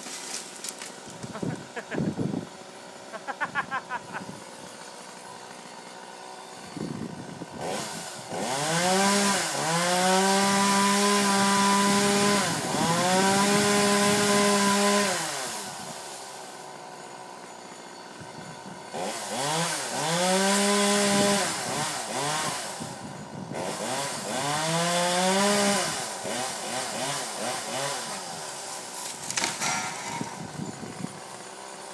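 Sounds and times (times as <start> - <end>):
chainsaw engine revving: 0.0 - 31.9.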